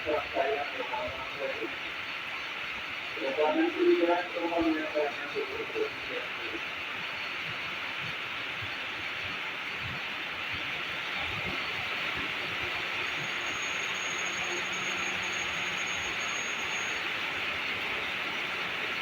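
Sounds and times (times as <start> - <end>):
electric train hum: 0.0 - 19.0
faint high whine: 0.0 - 19.0
rain hiss: 11.3 - 19.0.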